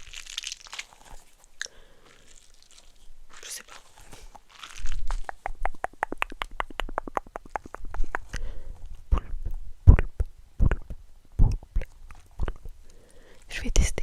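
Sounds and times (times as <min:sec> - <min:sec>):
wet mouth clicks: 0:03.3 - 0:08.5, 0:09.1 - 0:13.0
deep mouth pops: 0:04.8 - 0:12.8.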